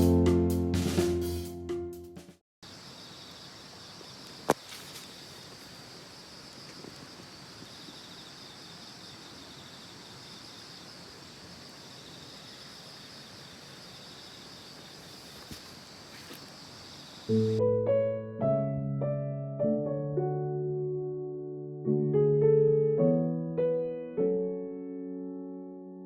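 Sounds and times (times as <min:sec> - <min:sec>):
insects trilling: 0:02.6 - 0:17.6.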